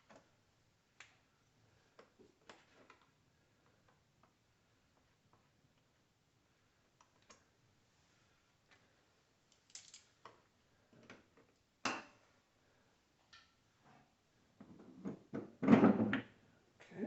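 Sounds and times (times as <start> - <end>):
small parts clicking and tapping: 9.5 - 10.4.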